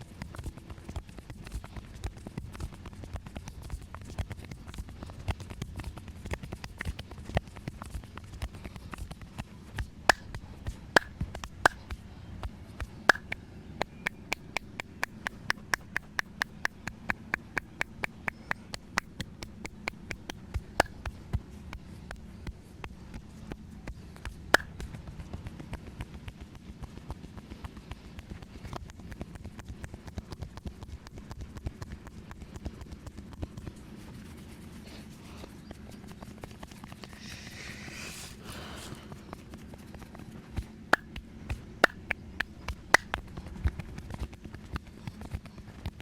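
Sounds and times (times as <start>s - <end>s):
hands slapping body: 9.8s - 12.1s, 12.8s - 21.8s, 24.3s - 24.8s, 40.9s - 43.4s.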